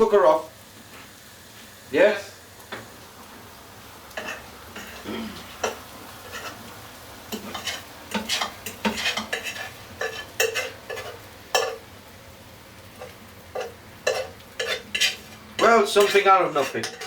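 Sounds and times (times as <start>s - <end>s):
utensil scraping frying pan: 4.1s - 11.9s, 12.8s - 17.0s.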